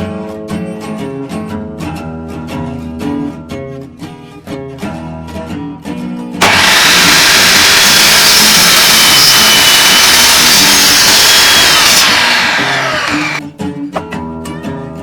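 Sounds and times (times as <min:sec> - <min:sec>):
woodworking power tool running: 0:06.4 - 0:13.4.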